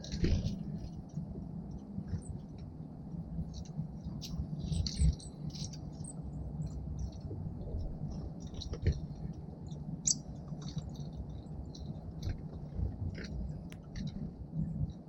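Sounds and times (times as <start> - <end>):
low background rumble: 0.0 - 15.0
songbirds chipping and twittering: 3.4 - 12.7.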